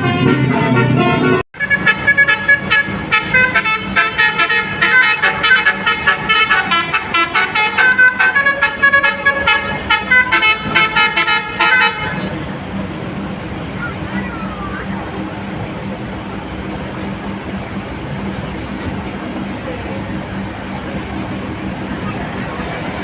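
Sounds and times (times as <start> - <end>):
bus musical horn quick tune: 0.0 - 12.3.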